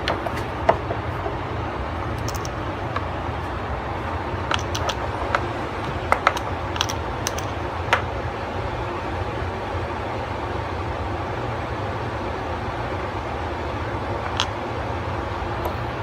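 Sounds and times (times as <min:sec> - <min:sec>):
steady low hum: 0:00.0 - 0:16.0
small metal parts clicking: 0:02.2 - 0:02.6, 0:04.5 - 0:05.0, 0:06.2 - 0:07.6.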